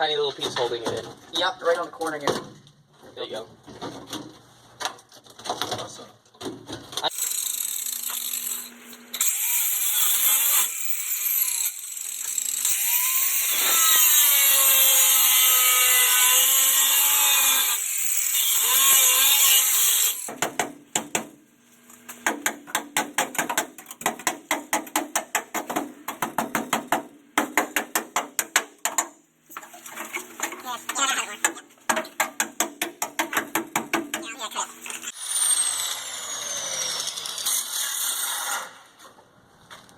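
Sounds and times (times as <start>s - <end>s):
power tool cutting sheet metal: 7.1s - 20.4s, 35.0s - 39.0s
sharp metallic knocks: 31.4s - 34.3s.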